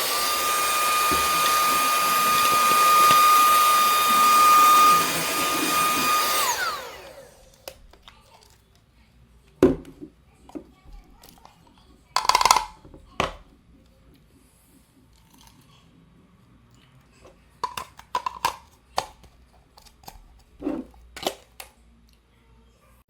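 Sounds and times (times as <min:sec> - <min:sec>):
hard objects clicking and knocking: 0:09.6 - 0:13.5, 0:17.2 - 0:21.8.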